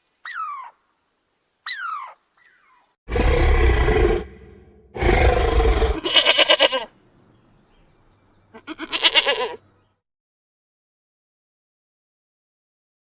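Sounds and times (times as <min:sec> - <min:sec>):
loud low roar: 0:03.1 - 0:06.0
goat bleating: 0:06.0 - 0:06.9, 0:08.5 - 0:09.6.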